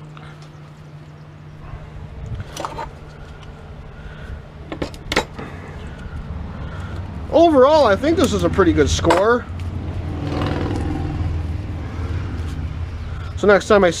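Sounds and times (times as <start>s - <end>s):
steady low hum: 0.0s - 14.0s
metal parts clicking and clanking: 2.4s - 3.5s.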